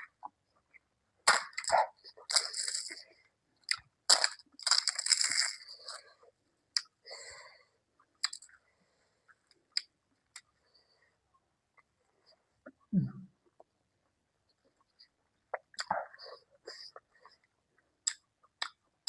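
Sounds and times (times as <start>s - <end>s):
person chewing and crunching food: 1.3s - 3.0s, 3.6s - 7.0s, 8.0s - 8.5s
sharp mouth clicks and smacks: 18.0s - 18.8s.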